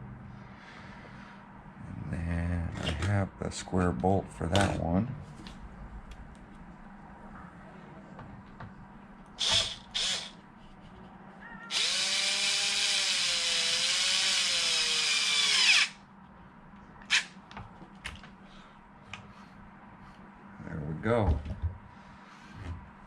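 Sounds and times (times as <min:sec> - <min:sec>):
power drill driving a bolt: 0:09.4 - 0:10.4, 0:11.7 - 0:16.0.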